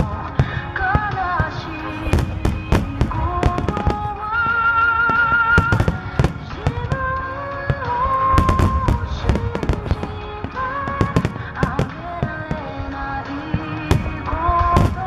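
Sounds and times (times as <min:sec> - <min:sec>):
fireworks bangs with crackle: 0:00.0 - 0:15.0
melody over loudspeakers: 0:00.0 - 0:15.0.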